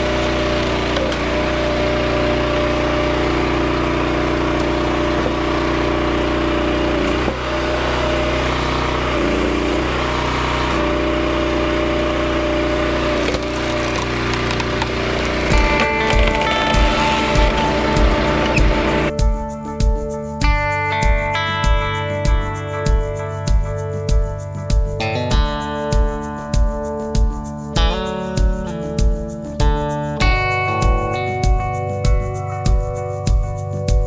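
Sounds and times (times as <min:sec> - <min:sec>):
log splitter engine running: 0:00.0 - 0:19.2
logs cracking and splitting: 0:11.7 - 0:19.1.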